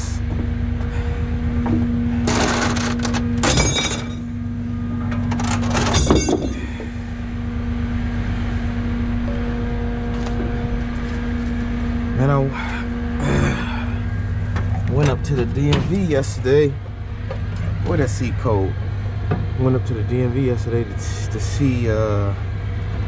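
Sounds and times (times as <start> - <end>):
truck engine drone: 0.0 - 23.0
clattering rattling bursts: 2.2 - 4.3.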